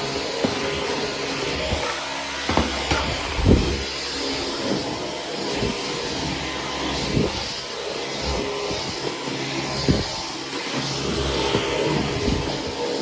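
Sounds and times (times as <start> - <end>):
stick vacuum running: 0.0 - 13.0.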